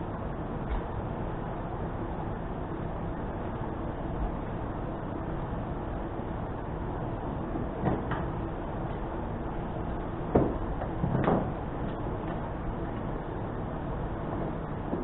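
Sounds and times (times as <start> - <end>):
steady background rumble: 0.0 - 15.0.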